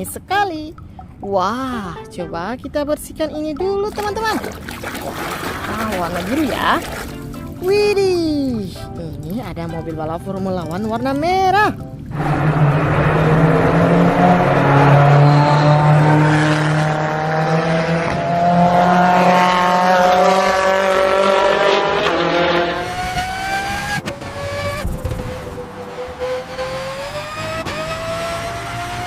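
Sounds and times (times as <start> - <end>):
race car engine revving: 12.1 - 29.0.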